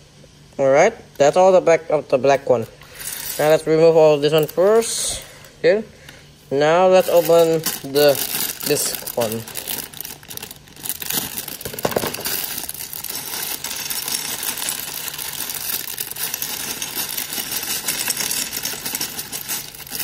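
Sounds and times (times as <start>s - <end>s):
plastic bag crinkling: 2.5s - 5.2s, 6.8s - 20.0s
plastic bricks clicking and rattling: 7.0s - 20.0s.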